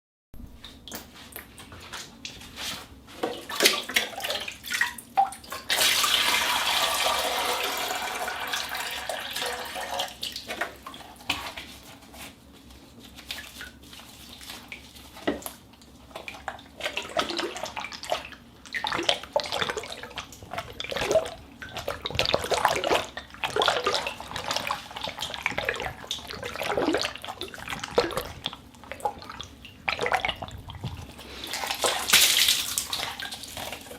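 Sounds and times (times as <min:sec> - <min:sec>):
rubber gloves squelching: 0:10.4 - 0:33.9.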